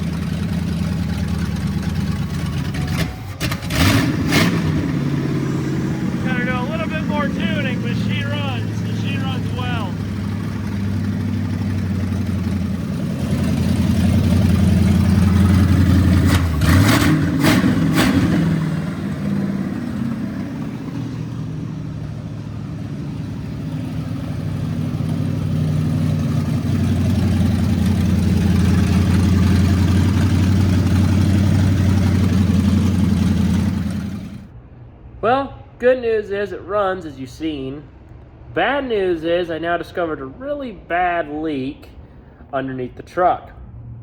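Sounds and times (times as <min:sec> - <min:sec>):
sharp engine cracks: 0:00.0 - 0:05.1
truck engine running rough: 0:00.0 - 0:34.6.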